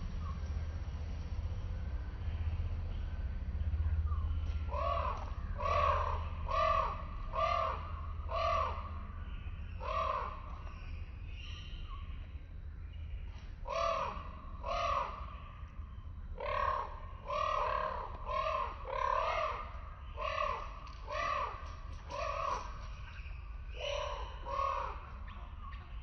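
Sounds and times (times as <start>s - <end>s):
steady low rumble: 0.0s - 26.0s
bird harsh calls: 4.1s - 12.3s, 13.6s - 26.0s.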